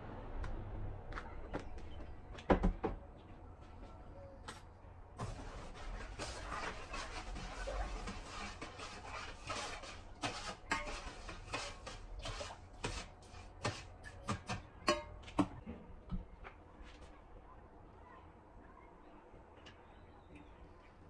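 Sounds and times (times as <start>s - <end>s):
kitchenware clattering: 6.5s - 15.6s.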